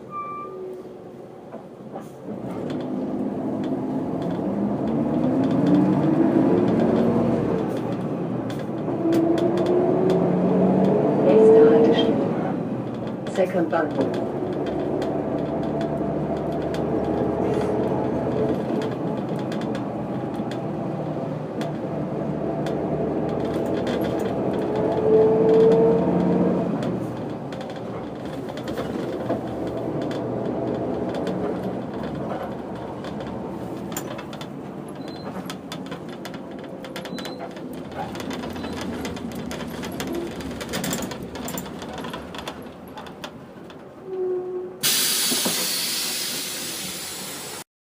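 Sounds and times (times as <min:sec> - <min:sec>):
bus diesel engine running: 0:00.7 - 0:47.6
compressed air hiss: 0:44.8 - 0:47.6.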